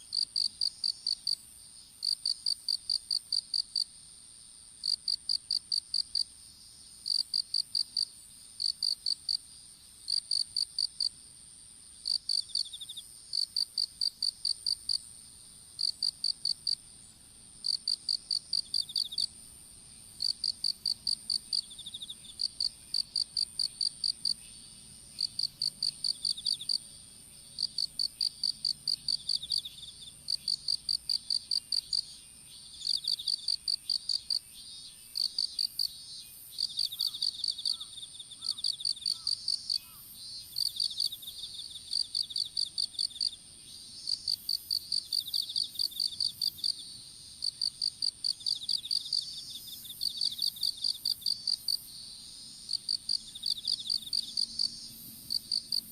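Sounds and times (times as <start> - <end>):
crickets chirping in bursts: 0.0 - 55.9
high-pitched insect trill: 19.9 - 55.9.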